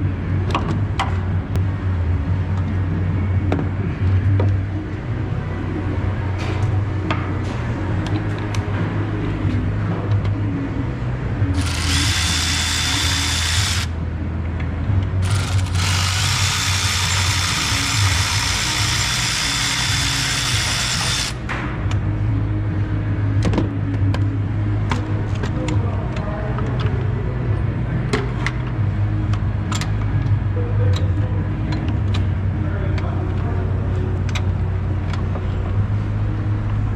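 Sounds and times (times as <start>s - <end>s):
steady low hum: 0.0s - 36.9s
power drill whining: 11.6s - 14.0s, 15.2s - 21.4s.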